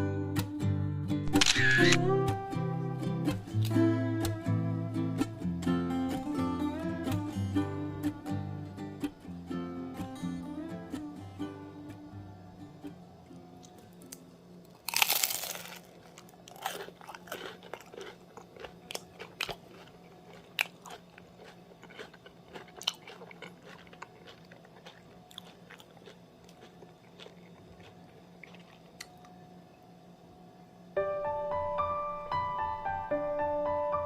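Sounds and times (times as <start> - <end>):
crunchy bite and chewing: 1.3 - 2.0, 14.0 - 29.2.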